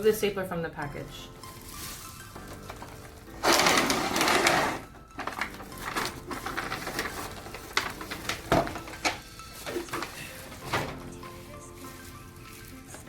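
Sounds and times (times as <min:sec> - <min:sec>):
packaging tearing: 0:01.5 - 0:10.2.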